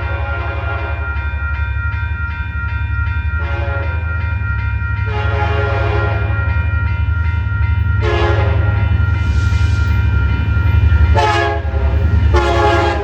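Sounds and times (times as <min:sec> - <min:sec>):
crossing warning bell ringing: 0:00.0 - 0:13.0
locomotive air horn: 0:05.1 - 0:06.2, 0:08.0 - 0:08.7, 0:11.2 - 0:13.0.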